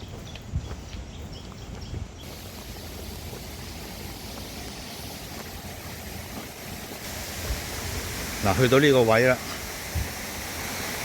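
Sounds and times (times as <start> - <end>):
stream water flowing: 2.2 - 11.0.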